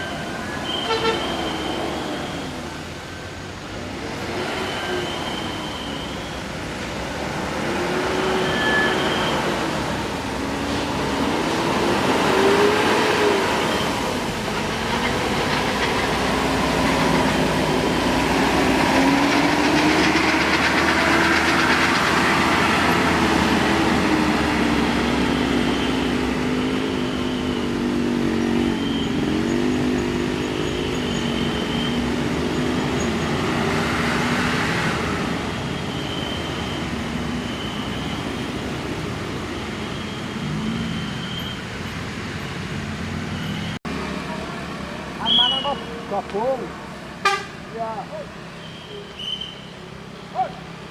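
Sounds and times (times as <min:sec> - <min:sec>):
multi-tone air horn: 0:00.6 - 0:01.4, 0:47.2 - 0:47.6.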